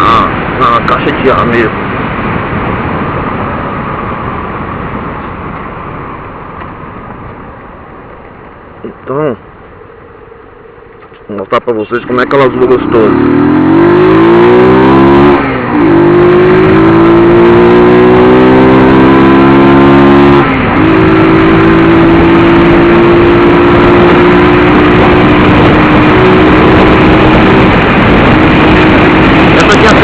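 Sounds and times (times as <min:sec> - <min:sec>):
motorcycle engine revving: 0:11.9 - 0:30.0.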